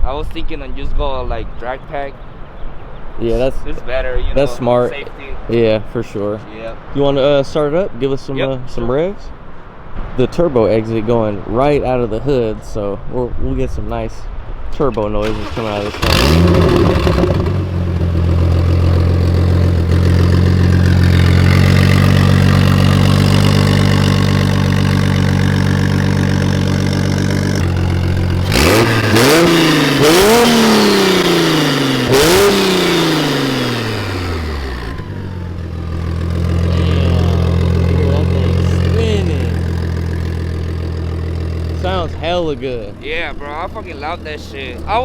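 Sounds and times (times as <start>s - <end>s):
car engine idling and revving: 15.2s - 45.0s.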